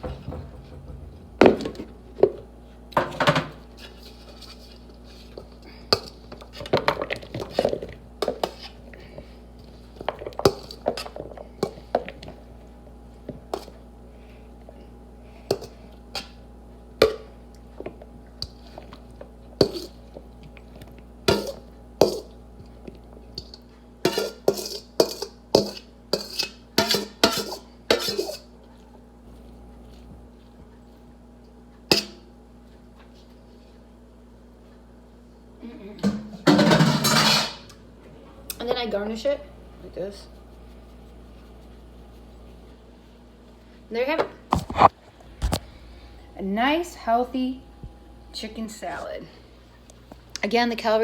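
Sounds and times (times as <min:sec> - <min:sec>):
utensils clinking against dishes: 0:23.4 - 0:28.5, 0:36.4 - 0:37.8.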